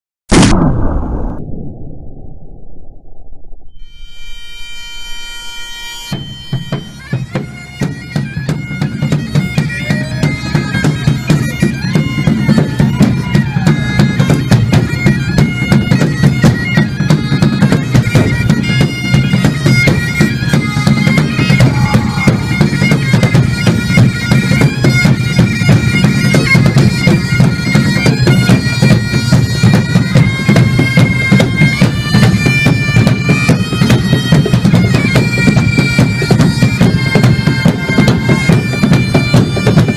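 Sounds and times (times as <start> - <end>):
droning bagpipe-like melody: 4.0 - 39.9
fast driving drum beat: 8.2 - 28.9.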